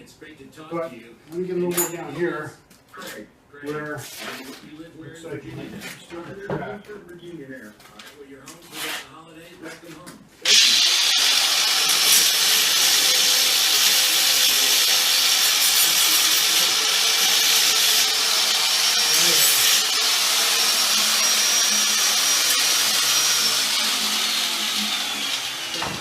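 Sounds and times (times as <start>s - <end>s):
power grinder whining on metal: 10.5s - 26.0s.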